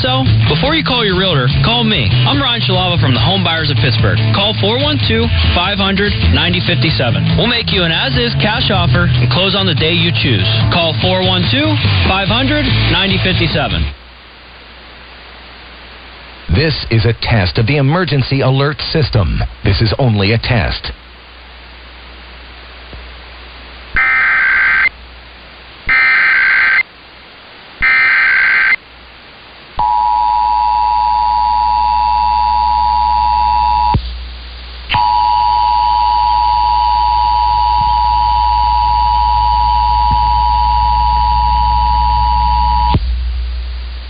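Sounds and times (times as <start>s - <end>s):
warbling digital data bursts: 24.0s - 24.9s, 25.9s - 26.9s, 27.8s - 28.8s.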